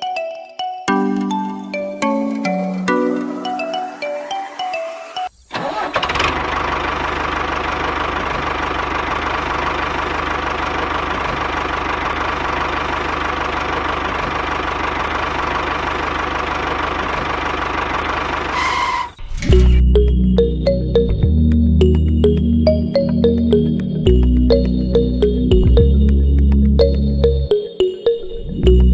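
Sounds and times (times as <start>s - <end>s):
engine starting and idling: 5.5s - 20.0s.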